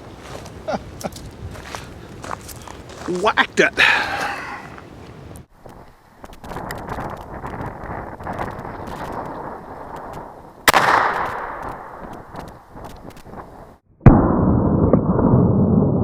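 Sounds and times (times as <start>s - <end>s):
rifle shot echoing: 10.7s - 11.5s.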